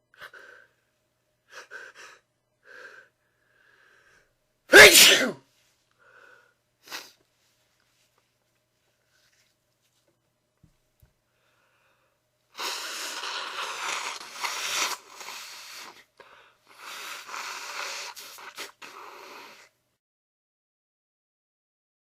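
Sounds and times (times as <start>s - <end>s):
person wheezing breaths: 0.1s - 4.3s, 6.0s - 7.2s, 11.3s - 19.8s.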